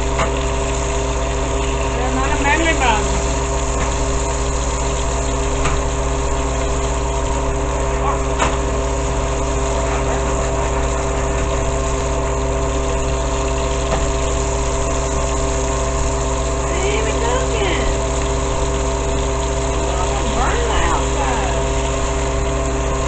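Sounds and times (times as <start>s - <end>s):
motor-like hum: 0.0s - 23.0s.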